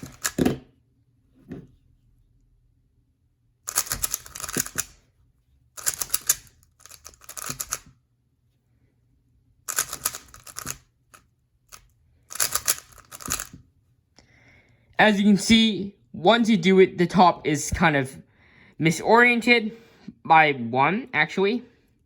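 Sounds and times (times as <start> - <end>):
puzzle cube plastic clicking: 0.0 - 0.6, 3.7 - 5.0, 5.8 - 7.9, 9.7 - 13.6.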